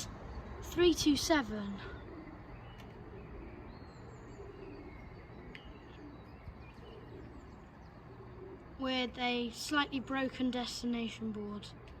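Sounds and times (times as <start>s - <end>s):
faint bird chirps: 0.0s - 11.1s.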